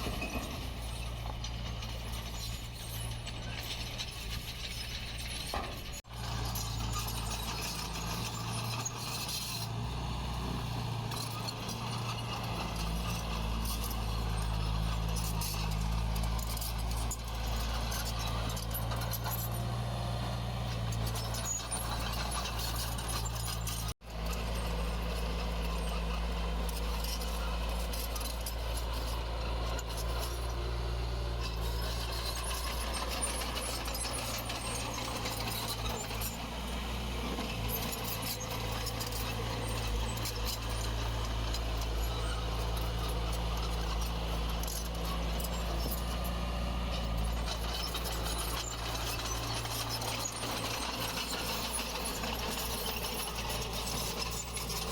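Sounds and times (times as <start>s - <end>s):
metallic clanking and rattling: 0.0s - 9.8s, 31.4s - 54.9s
heavy diesel machinery running: 0.0s - 54.9s.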